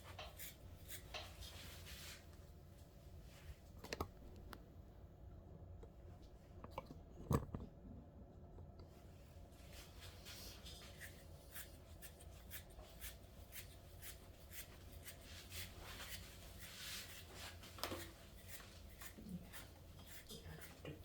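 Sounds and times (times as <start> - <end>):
stripping knife scratching dog hair: 0.0 - 2.2, 10.0 - 21.0.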